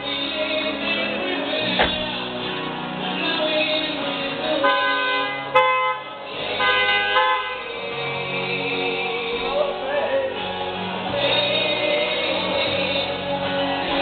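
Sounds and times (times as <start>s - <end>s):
background music with singing: 0.0s - 14.0s
car horn honking: 4.6s - 7.8s.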